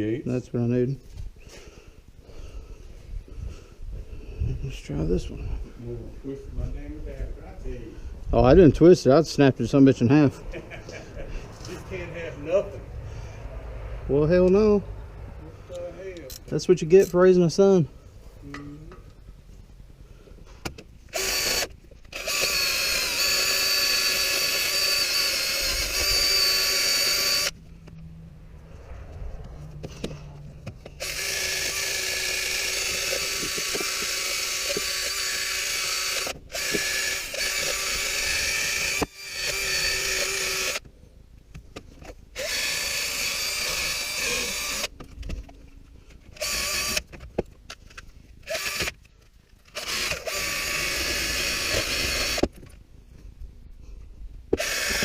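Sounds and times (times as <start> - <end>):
cordless power tool whining: 21.1 - 27.6, 30.7 - 40.9, 42.3 - 44.9, 46.3 - 47.2, 48.4 - 52.6, 54.5 - 55.0.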